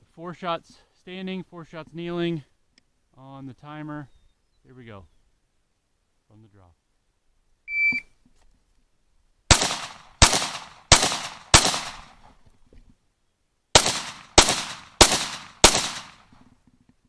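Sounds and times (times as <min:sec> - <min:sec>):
pistol shots with echo: 0:09.5 - 0:12.2, 0:13.8 - 0:16.3.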